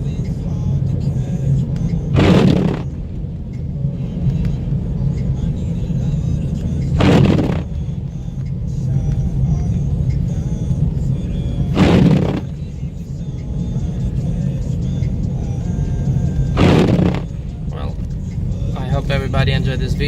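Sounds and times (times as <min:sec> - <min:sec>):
engine and tyre rumble: 0:00.0 - 0:20.0.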